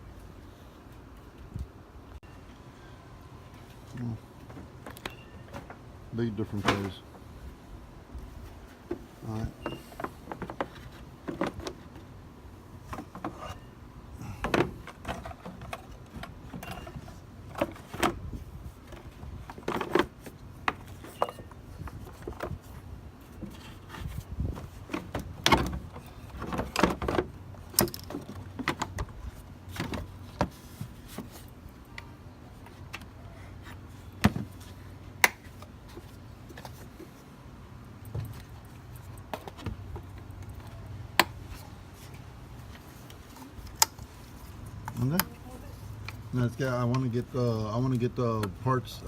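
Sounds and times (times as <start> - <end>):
hands clicking and rattling parts: 24.8 - 31.4.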